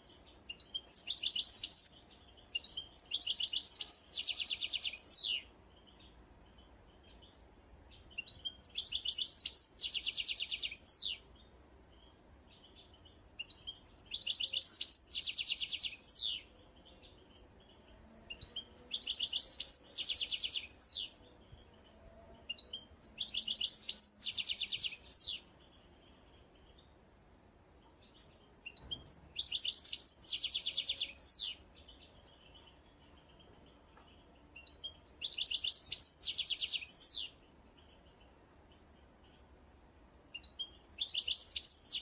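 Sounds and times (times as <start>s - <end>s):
songbird trilling: 28.7s - 31.6s, 34.6s - 37.3s, 40.4s - 42.0s.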